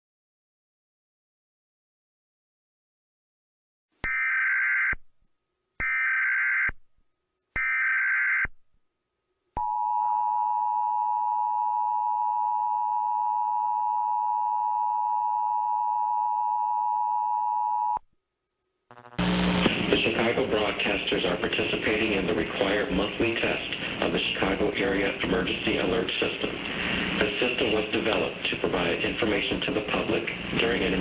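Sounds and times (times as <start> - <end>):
screeching digital bursts: 18.9 - 19.6.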